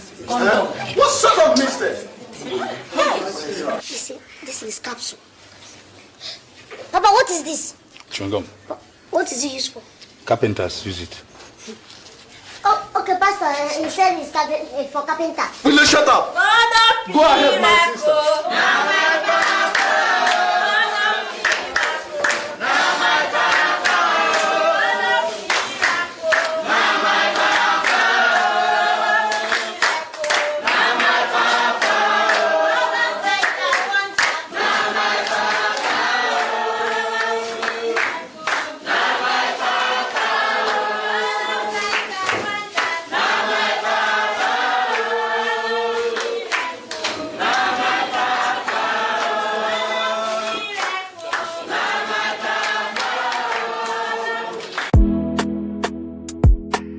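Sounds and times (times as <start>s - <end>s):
choir singing: 16.4s - 54.9s
hand clapping: 21.4s - 22.5s, 23.4s - 24.6s, 25.3s - 28.5s, 29.2s - 32.5s.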